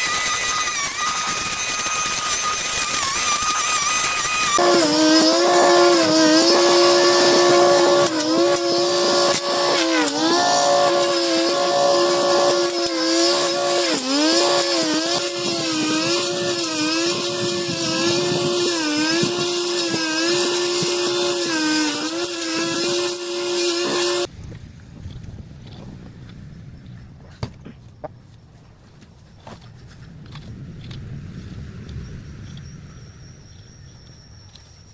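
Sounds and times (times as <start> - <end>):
two-stroke engine cutting: 0.0 - 24.3.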